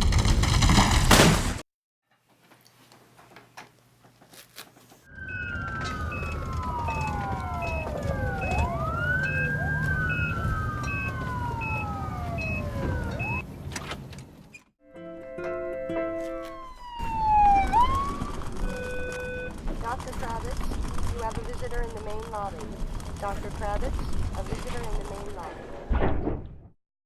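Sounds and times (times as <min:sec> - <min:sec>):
emergency sirens wailing: 0:05.1 - 0:13.4, 0:16.1 - 0:19.6
low hum: 0:05.1 - 0:13.4.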